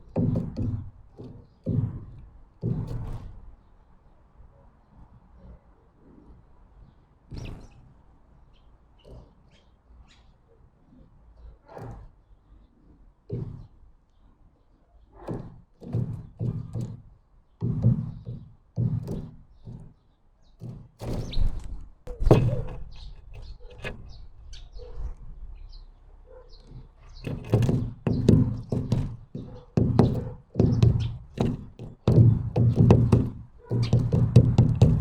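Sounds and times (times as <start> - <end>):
birds knocking on feeder: 0.0 - 3.8, 15.3 - 25.0, 26.5 - 35.0.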